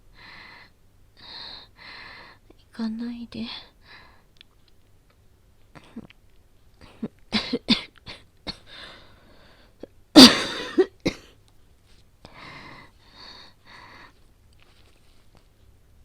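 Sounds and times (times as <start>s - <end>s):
woman coughing: 6.9s - 8.7s, 10.2s - 11.4s
strained breathy in-breaths: 8.7s - 9.8s, 12.2s - 15.2s.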